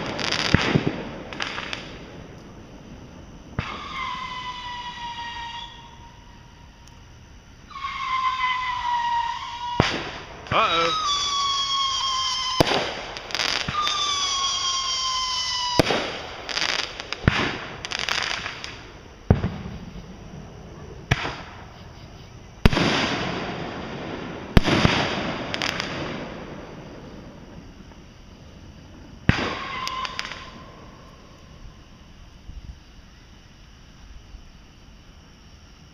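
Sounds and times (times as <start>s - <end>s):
firework bangs: 0.0s - 6.7s, 7.7s - 22.0s, 22.6s - 31.6s
firework crackling: 0.0s - 33.0s
firework whistle falling in pitch: 3.6s - 6.8s, 7.7s - 12.9s, 13.5s - 16.0s, 29.3s - 30.8s.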